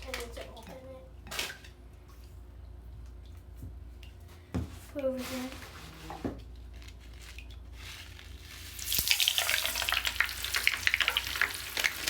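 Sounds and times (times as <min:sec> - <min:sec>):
bath crystals crackling and popping: 0:06.7 - 0:12.0.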